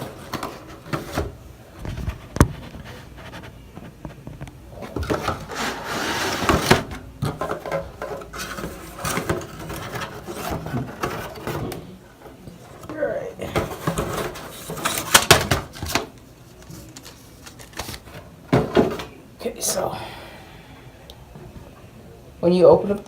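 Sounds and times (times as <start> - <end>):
cardboard rubbing and scraping: 4.8 - 6.9.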